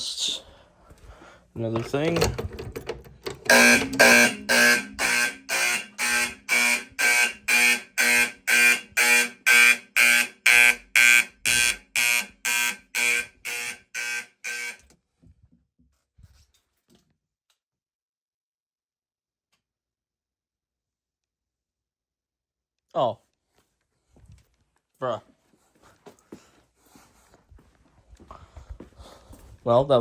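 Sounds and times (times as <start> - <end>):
fire alarm horn pulsing: 3.4 - 14.9.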